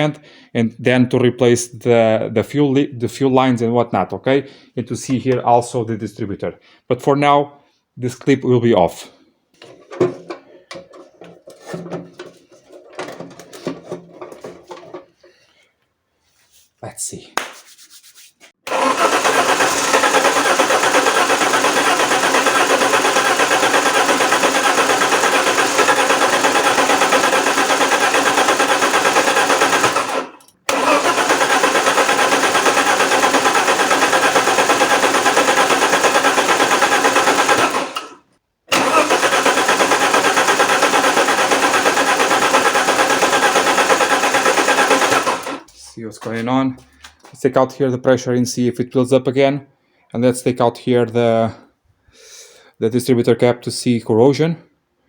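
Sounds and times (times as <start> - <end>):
car engine cranking on starter: 18.7 - 45.7.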